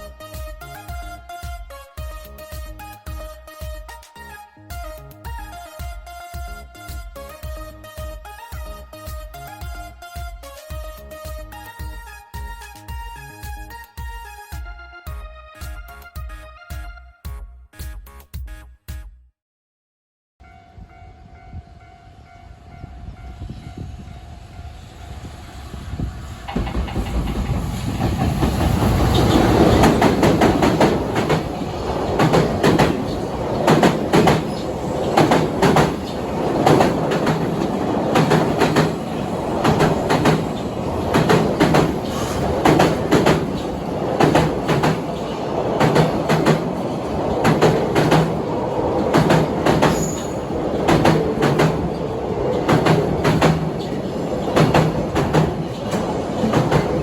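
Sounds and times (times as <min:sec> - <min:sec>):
train wheels clacking over rail joints: 0:26.5 - 0:57.0.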